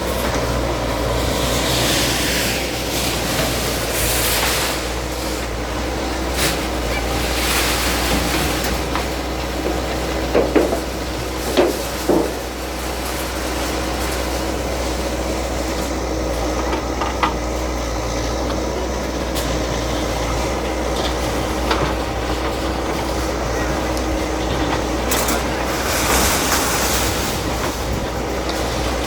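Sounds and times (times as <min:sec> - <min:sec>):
bulldozer engine running: 0:00.0 - 0:29.0
debris knocking and clattering: 0:06.5 - 0:14.2, 0:24.4 - 0:29.0.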